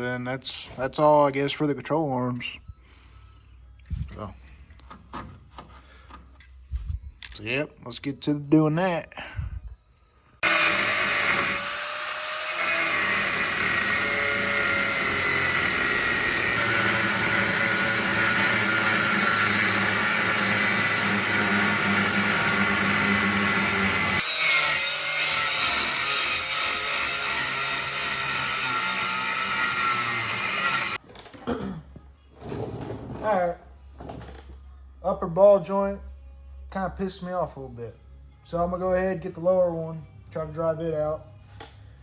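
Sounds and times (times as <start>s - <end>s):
power tool whining into metal: 10.4s - 31.0s.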